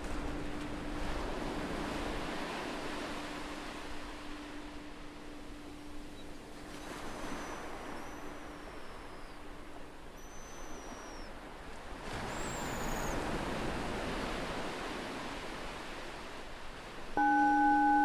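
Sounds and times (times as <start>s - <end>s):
ocean waves washing in: 0.0s - 18.0s
meditation bell ringing: 17.2s - 18.0s.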